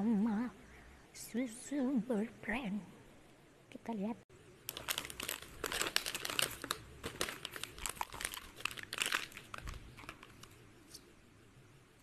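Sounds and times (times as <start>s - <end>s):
cereal packet crinkling: 4.6s - 11.0s.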